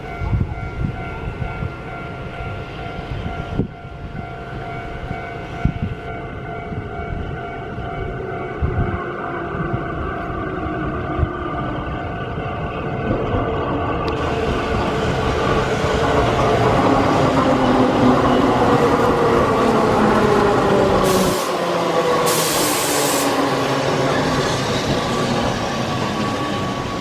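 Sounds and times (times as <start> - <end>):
train motor whine: 14.0 - 27.0
air hiss bursts: 21.0 - 21.6, 22.2 - 23.4.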